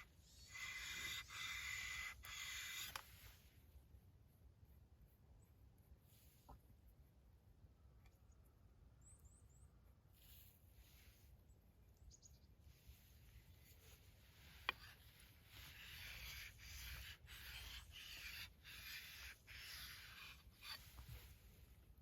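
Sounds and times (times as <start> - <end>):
blade scraping on whetstone: 0.0 - 3.1, 14.5 - 21.4.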